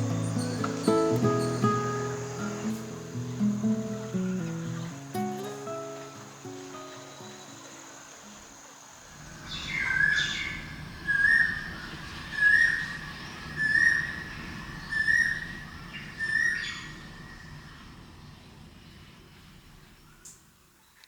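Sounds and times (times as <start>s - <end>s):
bird whistled call: 9.4s - 17.8s.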